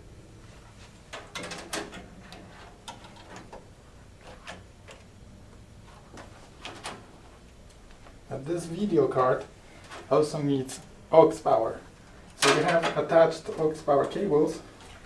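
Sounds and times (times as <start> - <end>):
faint steady hum: 0.0 - 15.0
clicks and knocks of handling hardware: 1.1 - 5.1, 12.3 - 14.2.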